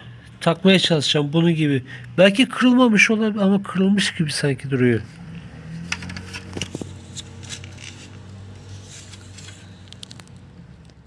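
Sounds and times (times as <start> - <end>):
clicks and scrapes of plastic parts: 5.1 - 11.0.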